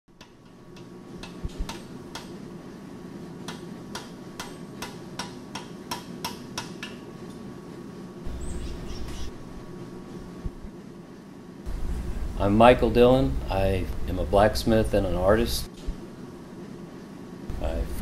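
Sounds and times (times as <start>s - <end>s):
steady low hum: 0.1s - 18.0s.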